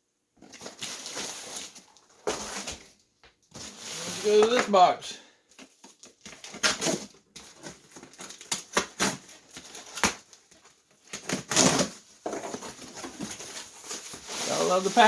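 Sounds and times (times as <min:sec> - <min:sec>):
packing material rustling: 0:00.4 - 0:04.9, 0:05.5 - 0:15.0
cardboard box being opened: 0:05.6 - 0:15.0.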